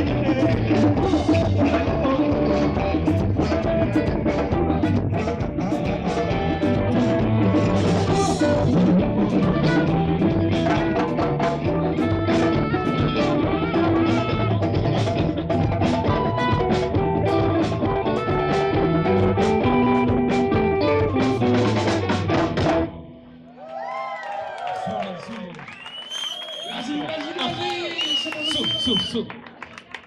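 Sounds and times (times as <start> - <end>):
live band playing: 0.0 - 23.3.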